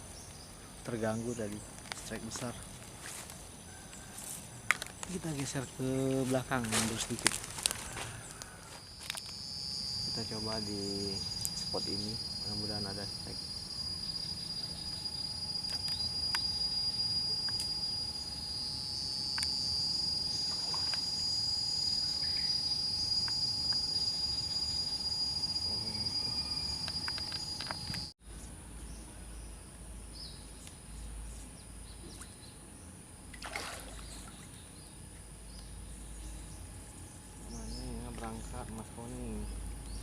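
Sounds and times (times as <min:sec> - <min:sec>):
high-pitched insect drone: 0:00.8 - 0:28.2, 0:35.5 - 0:40.0.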